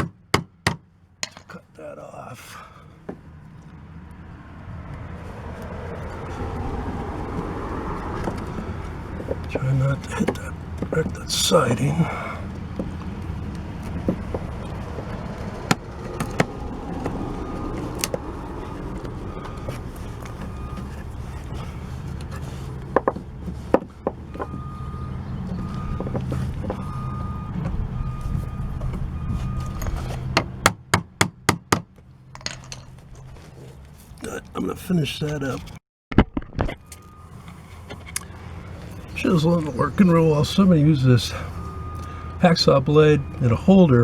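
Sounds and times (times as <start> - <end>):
hammer tapping a chisel: 0.0 - 1.6.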